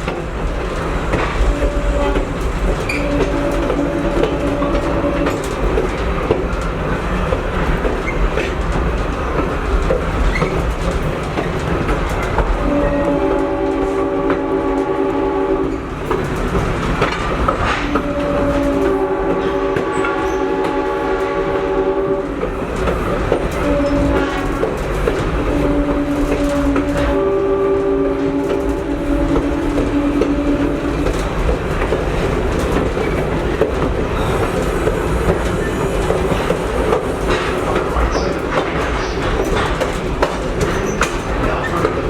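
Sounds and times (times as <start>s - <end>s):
train rumble and wheel clatter: 0.0s - 42.0s
locomotive horn blasts: 1.4s - 5.9s, 12.6s - 16.0s, 17.6s - 22.6s, 23.4s - 31.4s.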